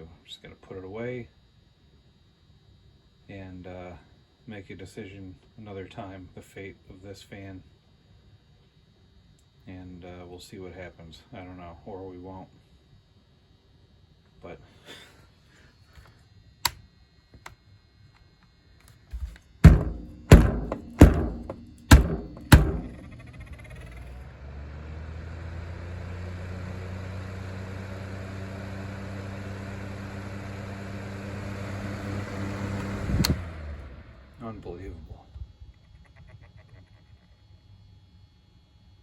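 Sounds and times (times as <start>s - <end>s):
heavy thunks: 19.1s - 23.7s
box fan motor humming: 19.1s - 34.8s.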